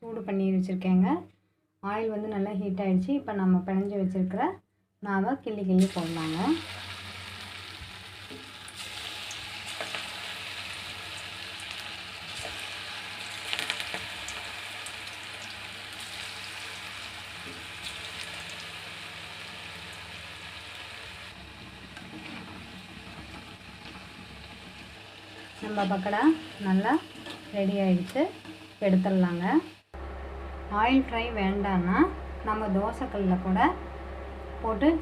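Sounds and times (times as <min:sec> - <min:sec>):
dough deep-frying in oil: 0:05.8 - 0:29.7.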